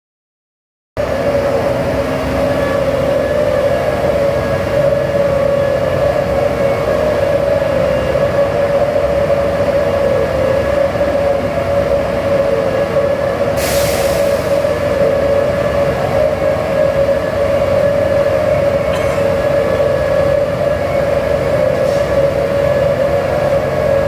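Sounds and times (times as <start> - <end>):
heavy machinery drone: 1.0 - 24.0
short high hiss: 13.6 - 14.6.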